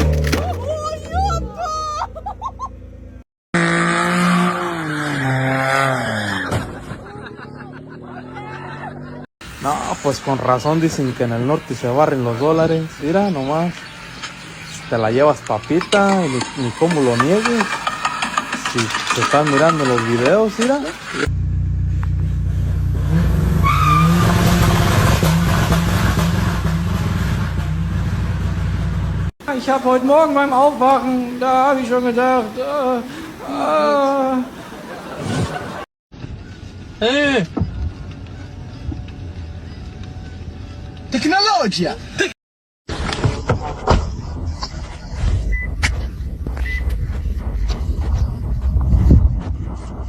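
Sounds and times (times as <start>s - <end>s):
engine running steadily: 0.0s - 3.2s
engine pitch falling: 0.0s - 9.9s.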